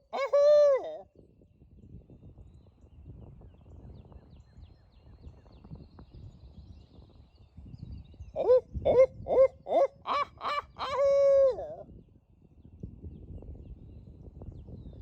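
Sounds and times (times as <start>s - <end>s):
owl call hoots: 0.1s - 1.0s.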